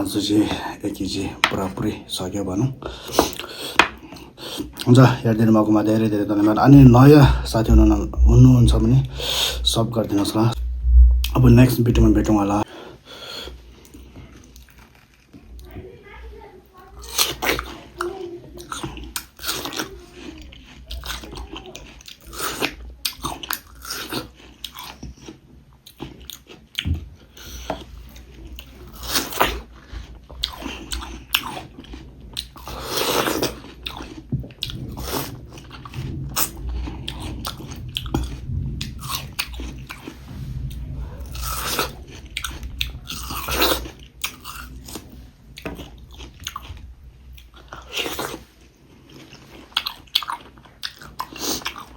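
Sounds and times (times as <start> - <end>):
person biting and chewing food: 17.0 - 51.9.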